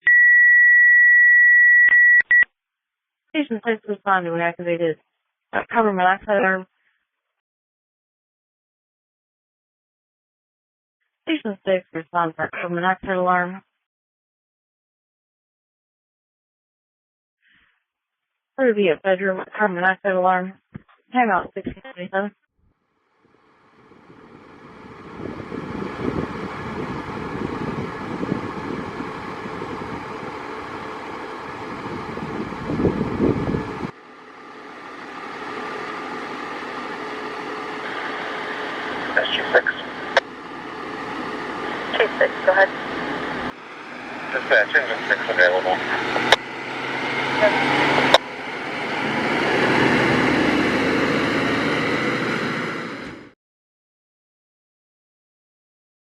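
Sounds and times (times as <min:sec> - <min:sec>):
vehicle engine running: 0:23.1 - 0:53.4.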